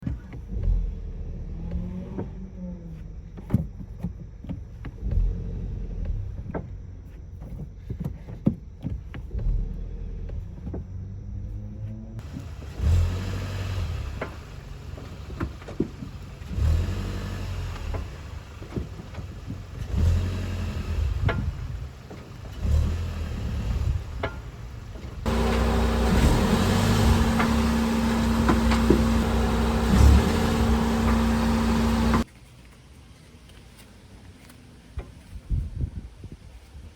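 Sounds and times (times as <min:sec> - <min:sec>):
car running noise: 0:09.0 - 0:32.3
brake pads clunking: 0:12.2 - 0:32.3.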